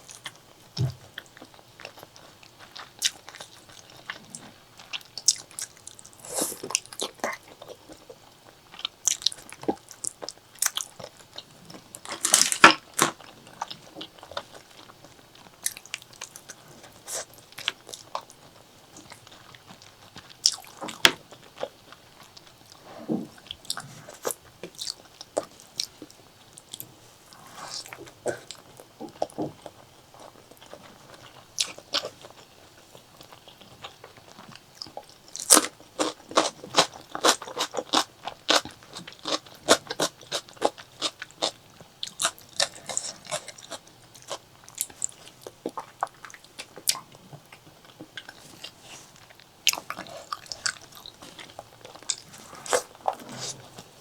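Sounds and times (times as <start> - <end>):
wet chewing with crunchy bites: 0.0 - 54.0.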